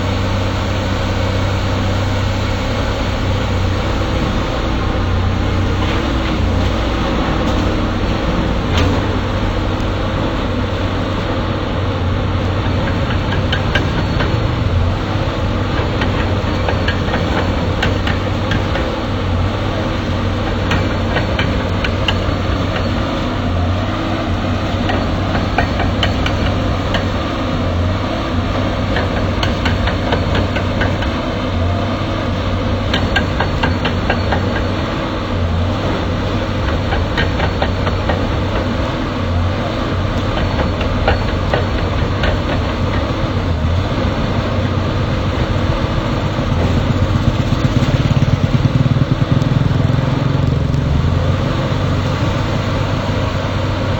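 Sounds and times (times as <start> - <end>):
excavator diesel engine: 0.0 - 53.9
metallic clicks and clanks: 24.6 - 27.2.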